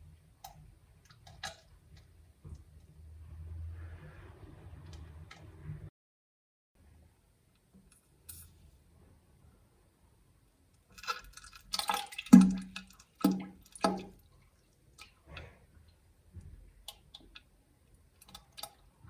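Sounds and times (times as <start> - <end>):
wet spluttering and crackling: 11.0 - 14.1
water drips: 11.0 - 15.2
plops into toilet water: 11.7 - 14.2.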